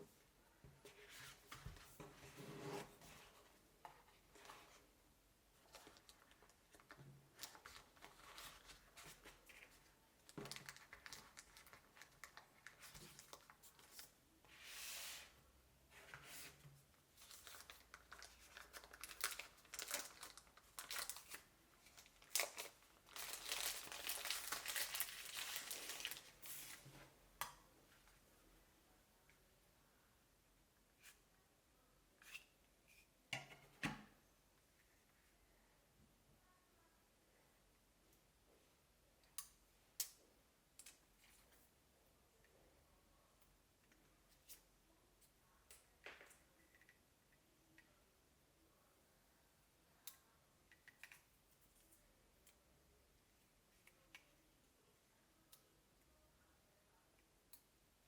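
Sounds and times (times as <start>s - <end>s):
packaging crinkling: 10.4s - 13.8s, 17.2s - 26.8s
packaging tearing: 22.2s - 26.3s.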